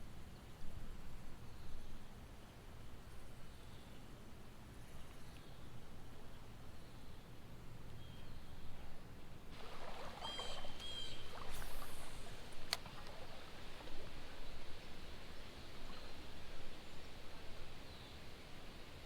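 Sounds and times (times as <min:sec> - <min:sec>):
faint water and handling noise: 0:08.4 - 0:19.0.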